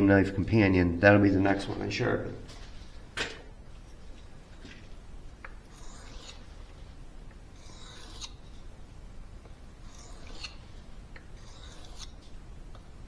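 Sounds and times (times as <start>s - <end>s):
knife blade scraping on whetstone: 5.7s - 6.7s, 7.6s - 8.6s, 9.8s - 12.3s.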